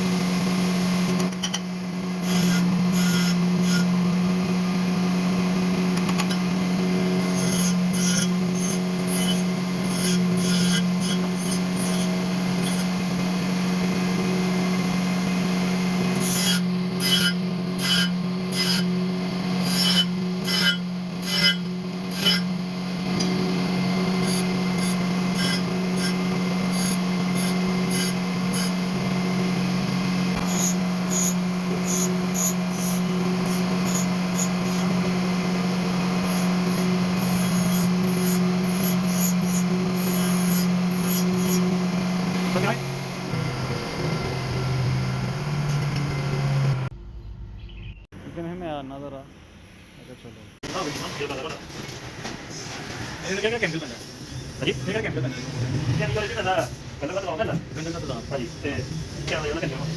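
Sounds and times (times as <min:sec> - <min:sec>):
motor hum: 0:00.0 - 0:48.5
metal being filed: 0:02.2 - 0:04.0, 0:07.0 - 0:13.1, 0:16.1 - 0:29.1, 0:30.3 - 0:42.9.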